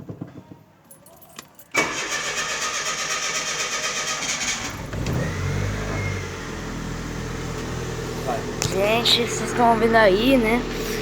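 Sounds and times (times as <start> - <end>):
car engine idling: 1.7 - 11.0
starter cranking engine: 1.8 - 6.8.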